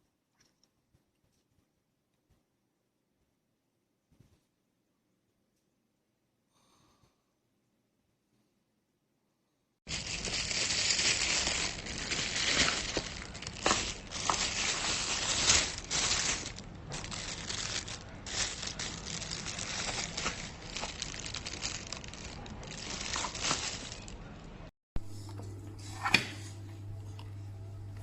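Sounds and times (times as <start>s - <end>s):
packaging crinkling: 9.9s - 24.4s.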